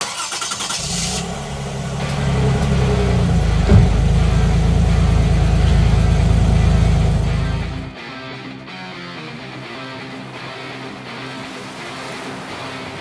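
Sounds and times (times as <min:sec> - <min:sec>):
starter motor grinding: 0:00.0 - 0:07.9
car engine running: 0:00.1 - 0:08.0
single knock: 0:03.6 - 0:04.4.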